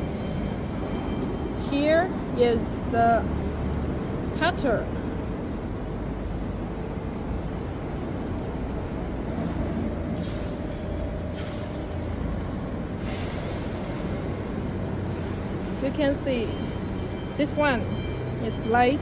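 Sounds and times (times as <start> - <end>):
hiss: 11.3 - 12.1, 13.0 - 14.1.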